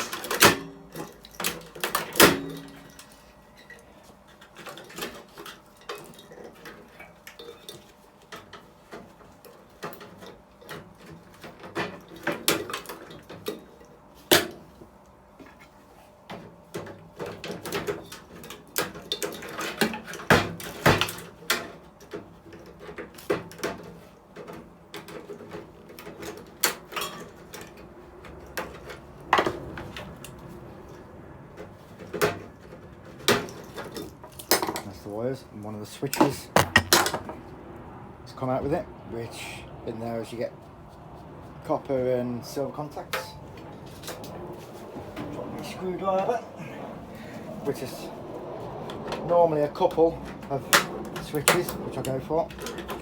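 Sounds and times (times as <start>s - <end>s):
sharp knocks: 36.6s - 37.4s.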